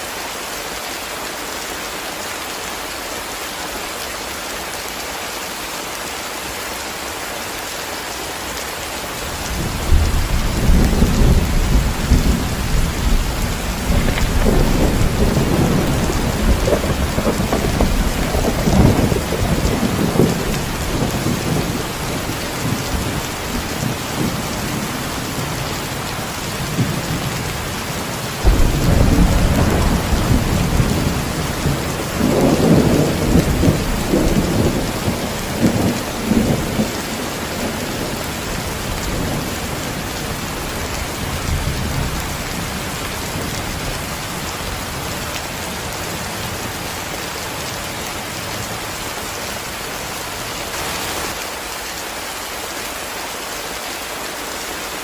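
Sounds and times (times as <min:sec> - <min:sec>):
heavy rain: 0:00.0 - 0:55.0
thunder rolling: 0:09.6 - 0:25.6, 0:28.4 - 0:38.2.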